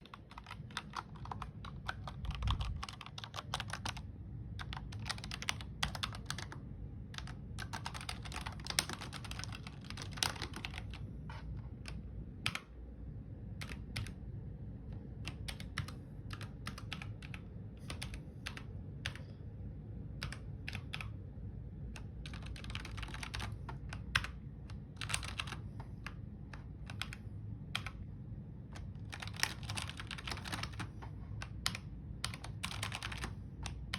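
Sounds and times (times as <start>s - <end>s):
keyboard typing clicks: 0.0s - 6.6s, 7.2s - 12.7s, 15.2s - 19.3s, 22.0s - 27.2s, 28.8s - 33.9s.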